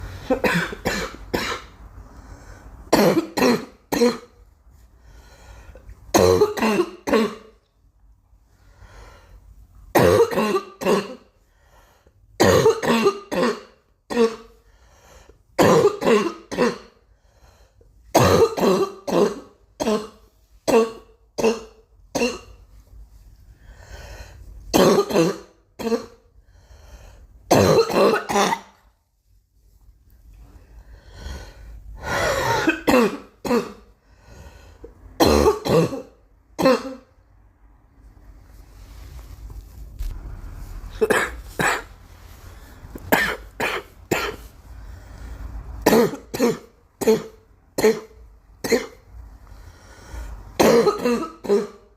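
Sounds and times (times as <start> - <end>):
girl coughing: 0.2 - 1.7, 2.9 - 4.3, 6.1 - 7.6, 9.9 - 11.3, 12.4 - 14.5, 15.6 - 17.0, 18.1 - 22.6, 24.7 - 26.2, 27.5 - 28.8, 32.3 - 33.9, 35.2 - 37.1, 41.0 - 41.9, 43.1 - 44.5, 45.8 - 49.0, 50.6 - 51.9.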